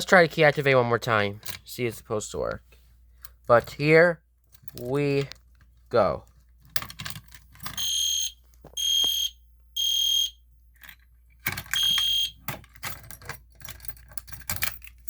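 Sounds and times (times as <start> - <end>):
clicking and rattling: 4.5 - 7.8, 10.8 - 15.0
fire alarm horn beeping: 7.8 - 10.4, 11.7 - 12.4.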